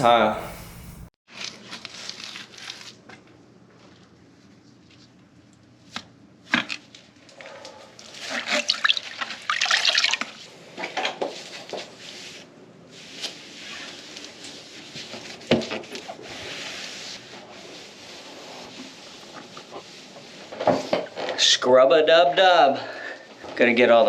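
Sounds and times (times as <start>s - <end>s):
grout scraping on tile: 13.0s - 21.4s.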